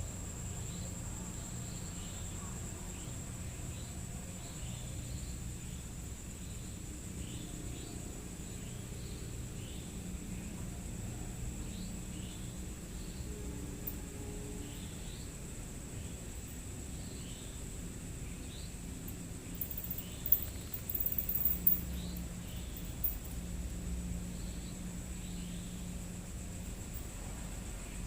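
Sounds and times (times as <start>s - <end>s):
steady hiss: 0.0s - 28.0s
high insect-like drone: 11.7s - 28.0s.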